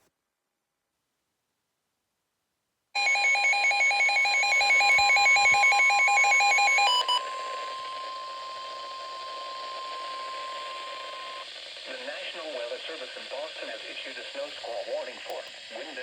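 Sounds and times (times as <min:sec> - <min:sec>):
pulsing electronic alarm beeps: 0:03.0 - 0:11.5
steady single-pitch attention tone: 0:03.0 - 0:11.5
radio hiss: 0:07.2 - 0:16.0.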